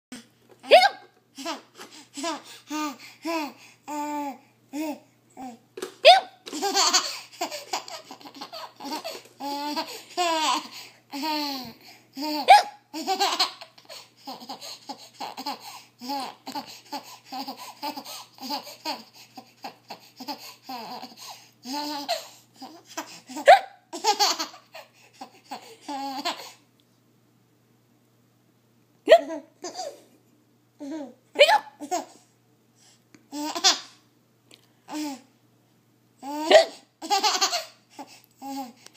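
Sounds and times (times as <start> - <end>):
baby hiccups: 0.6 - 1.1, 6.0 - 6.4, 31.4 - 31.8, 36.4 - 36.8
baby laughing: 0.6 - 26.6, 29.1 - 30.1, 33.3 - 34.0, 36.2 - 38.8.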